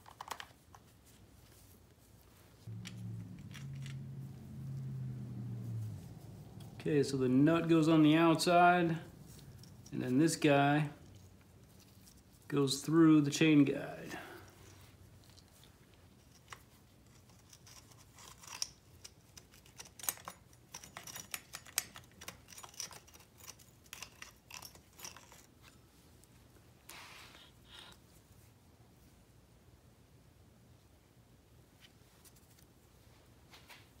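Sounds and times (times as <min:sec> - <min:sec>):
metal parts and tools clinking: 0:02.7 - 0:04.2, 0:07.6 - 0:12.3, 0:14.0 - 0:25.9
light scrape: 0:26.8 - 0:28.0.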